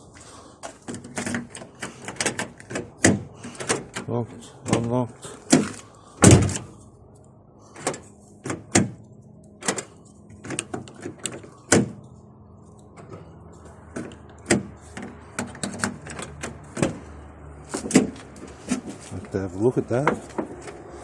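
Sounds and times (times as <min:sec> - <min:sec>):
car door locks clicking and clunking: 0:00.6 - 0:04.1, 0:04.7 - 0:06.7, 0:07.8 - 0:09.0, 0:09.6 - 0:12.1, 0:13.9 - 0:17.0, 0:17.7 - 0:18.9.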